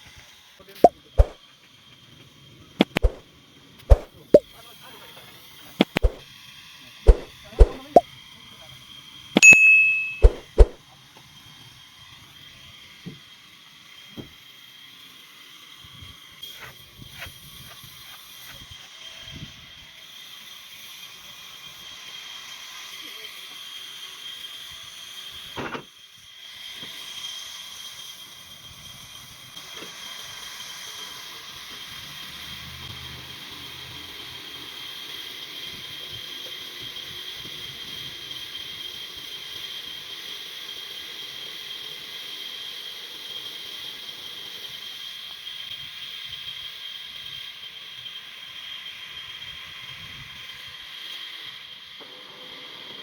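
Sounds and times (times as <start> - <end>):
sharp click: 2.8 - 3.2, 5.8 - 6.2, 7.1 - 8.0, 9.4 - 10.8.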